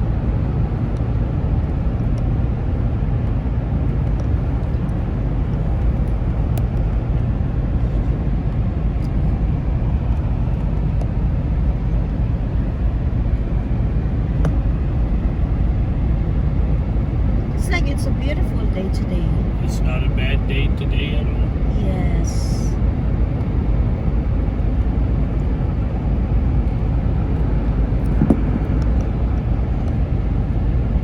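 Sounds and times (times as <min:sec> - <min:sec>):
car engine and road noise: 0:00.0 - 0:31.0.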